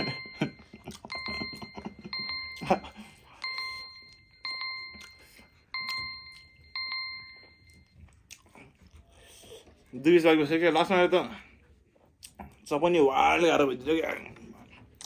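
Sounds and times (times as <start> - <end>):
timer alarm beeping: 0.0 - 8.1.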